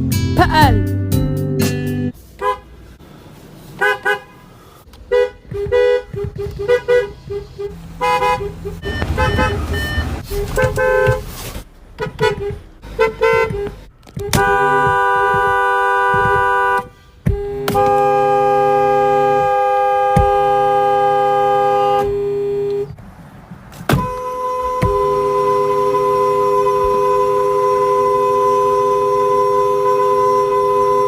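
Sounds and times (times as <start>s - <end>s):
two-note car horn: 12.0s - 22.9s, 24.0s - 31.0s.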